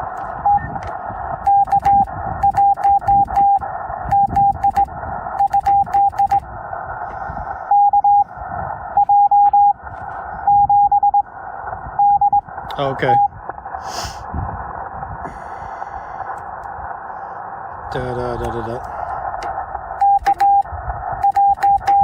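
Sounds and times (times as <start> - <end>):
receiver hiss: 0.0 - 22.0
morse code beeps: 0.4 - 0.8, 1.4 - 6.4, 7.7 - 8.3, 8.9 - 9.8, 10.4 - 11.3, 12.0 - 13.3, 19.4 - 22.0.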